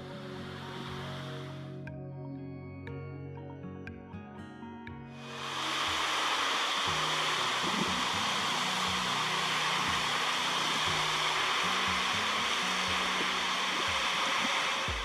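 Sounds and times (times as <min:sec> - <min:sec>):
soft background music: 0:00.0 - 0:15.0
fast-flowing water rushing: 0:05.2 - 0:15.0.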